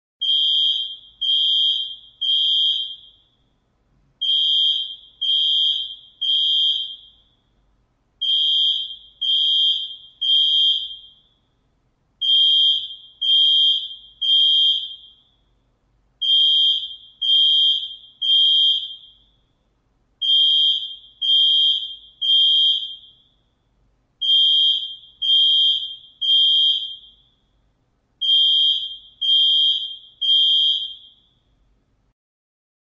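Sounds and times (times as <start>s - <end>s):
fire alarm beeping: 0.2s - 3.5s, 4.2s - 7.6s, 8.2s - 11.5s, 12.2s - 15.6s, 16.2s - 19.6s, 20.2s - 23.6s, 24.2s - 27.6s, 28.2s - 31.6s.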